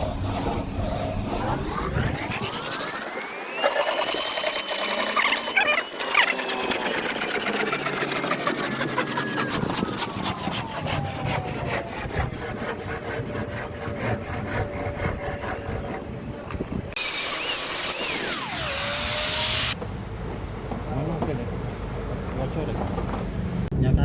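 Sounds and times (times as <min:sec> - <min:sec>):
power tool cutting wood: 0:00.0 - 0:19.8.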